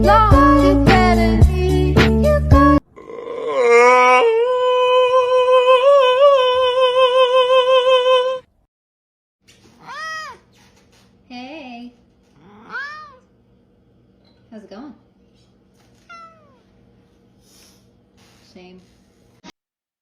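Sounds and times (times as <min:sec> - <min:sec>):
brief cat meows: 0:09.8 - 0:10.5, 0:12.4 - 0:13.2, 0:16.0 - 0:16.6
cat yawning meow: 0:09.8 - 0:10.5, 0:12.4 - 0:13.3, 0:16.1 - 0:16.6.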